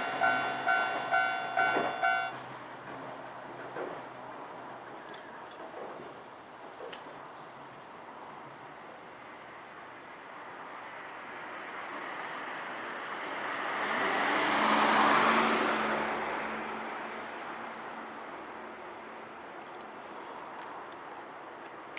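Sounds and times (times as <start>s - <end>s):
car passing by: 11.5s - 18.1s.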